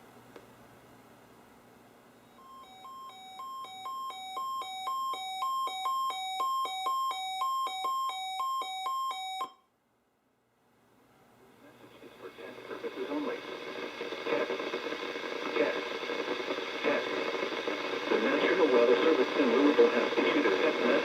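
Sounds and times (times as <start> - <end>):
alternating two-tone alert beeping: 2.4 - 9.6
faint radio hiss: 10.5 - 21.0.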